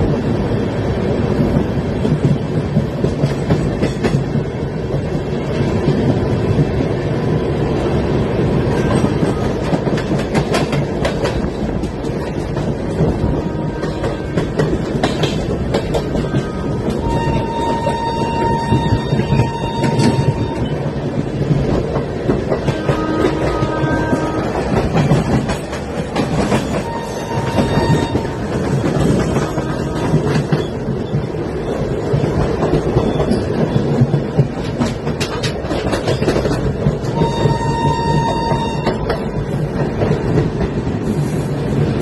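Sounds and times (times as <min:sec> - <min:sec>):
train rumbling on track: 0:00.0 - 0:42.0
wheels clickety-clack over rail joints: 0:00.0 - 0:42.0
high-pitched wheel squeals: 0:17.0 - 0:20.7, 0:26.8 - 0:28.3.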